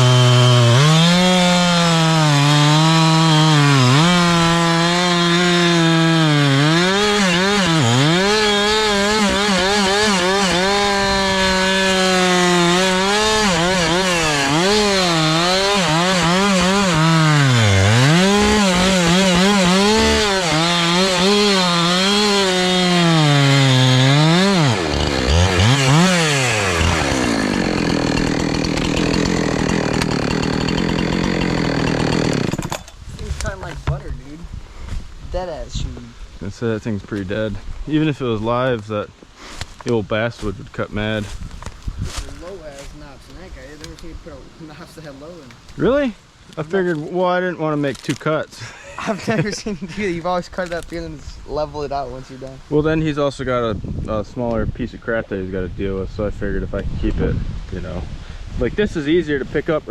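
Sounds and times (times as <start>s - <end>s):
chainsaw cutting log: 0.0s - 34.1s, 41.0s - 46.1s.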